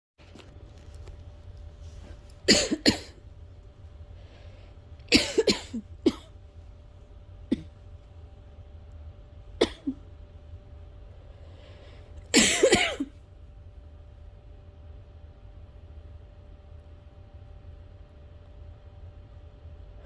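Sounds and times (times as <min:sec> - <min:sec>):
person coughing harshly: 0:02.5 - 0:03.2, 0:05.1 - 0:06.3, 0:07.5 - 0:07.7, 0:09.6 - 0:10.0, 0:12.3 - 0:13.2.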